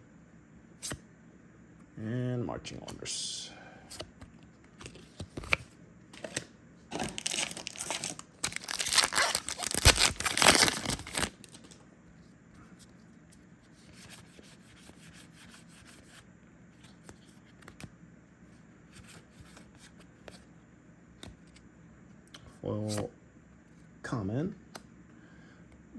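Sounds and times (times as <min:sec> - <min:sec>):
foil wrapper tearing and crinkling: 0:07.0 - 0:11.8.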